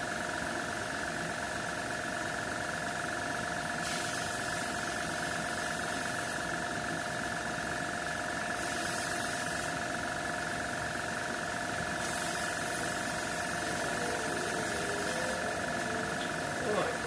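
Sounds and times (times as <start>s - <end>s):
airbrush hissing air: 3.8s - 6.4s, 8.6s - 9.9s, 11.9s - 17.0s
airbrush compressor humming: 8.5s - 17.0s.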